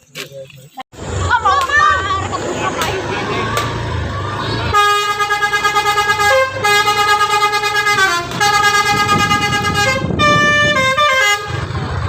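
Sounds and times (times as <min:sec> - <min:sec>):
musical air horn playing a tune: 0:04.7 - 0:11.6.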